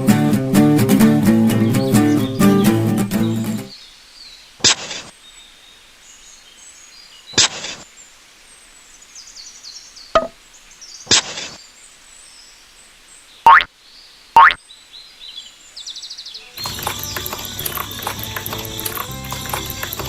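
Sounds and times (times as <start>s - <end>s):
sharp knocks: 10.2s - 10.4s.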